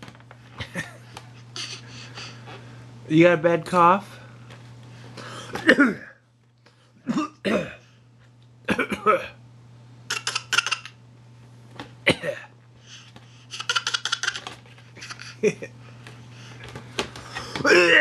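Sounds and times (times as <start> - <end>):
baby fake coughing: 5.6 - 6.2, 7.1 - 7.8, 8.7 - 9.4, 10.1 - 11.0, 12.1 - 12.5.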